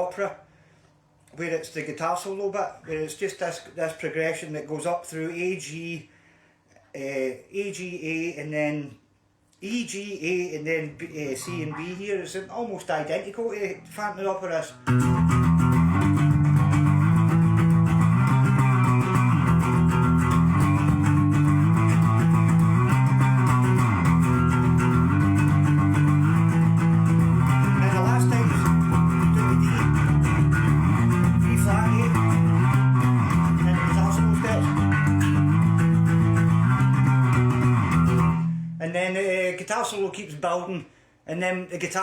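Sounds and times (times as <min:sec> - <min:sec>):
electric bass guitar: 0:11.4 - 0:12.6, 0:13.5 - 0:38.9
electric guitar solo: 0:14.8 - 0:38.8.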